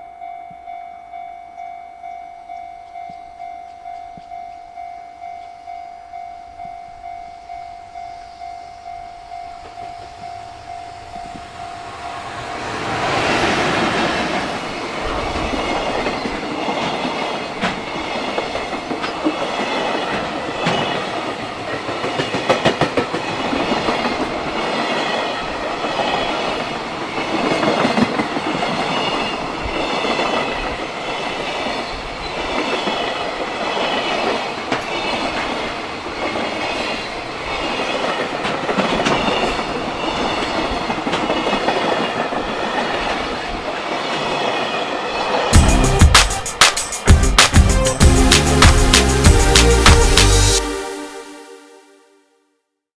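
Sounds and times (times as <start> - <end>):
train wheels clacking over rail joints: 15.1 - 24.6, 37.6 - 43.2.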